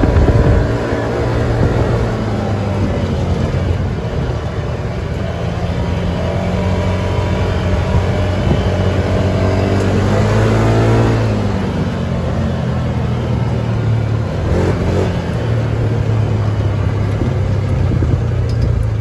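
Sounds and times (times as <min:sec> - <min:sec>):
single-cylinder engine revving: 0:00.0 - 0:19.0.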